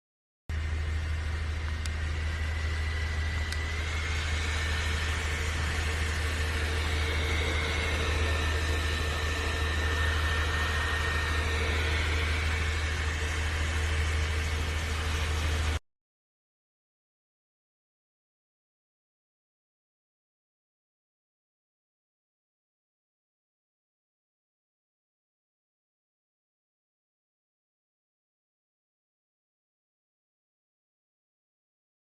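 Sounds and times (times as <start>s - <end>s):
fan motor whine: 0.5s - 15.8s.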